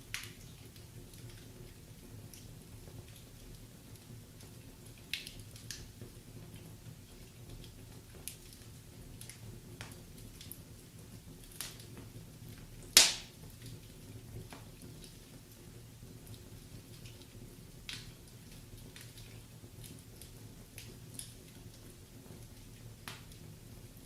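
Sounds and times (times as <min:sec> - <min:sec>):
wood fire crackling: 0:00.0 - 0:24.0
logs popping: 0:13.0 - 0:13.3.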